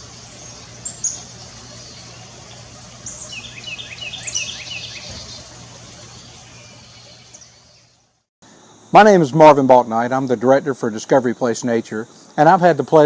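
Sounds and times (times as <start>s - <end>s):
bird chirping: 0.0s - 8.2s
steady low hum: 0.0s - 10.8s.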